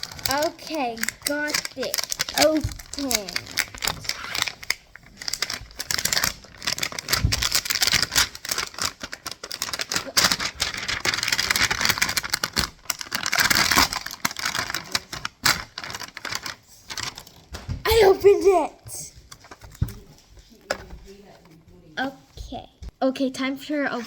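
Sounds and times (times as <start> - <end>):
scattered plastic clicks: 0.0 - 17.4
plastic packaging crinkling: 0.0 - 17.6.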